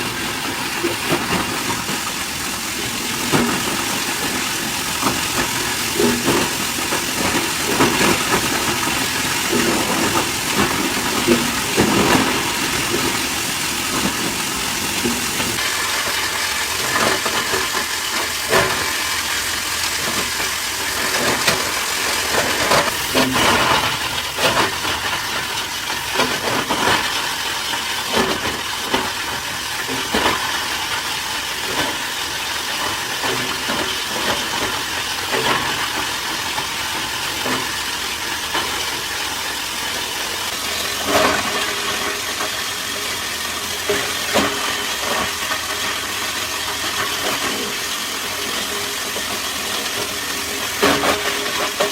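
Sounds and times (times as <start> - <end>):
machinery hissing: 0.0 - 28.2.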